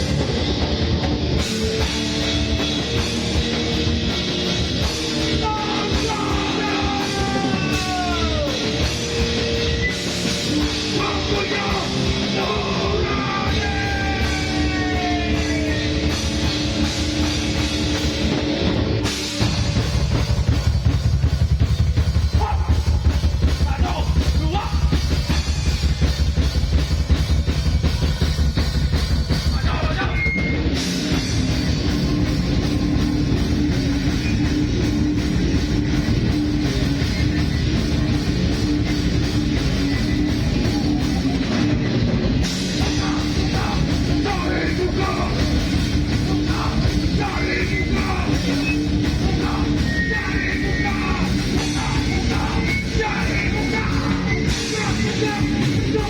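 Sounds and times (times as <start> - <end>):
drum kit: 0.0 - 56.0
heavy rock band playing: 0.0 - 56.0.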